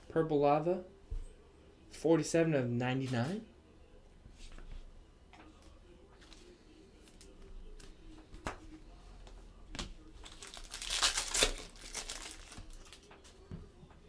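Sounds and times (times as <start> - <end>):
foil wrapper crinkling: 9.8 - 13.4.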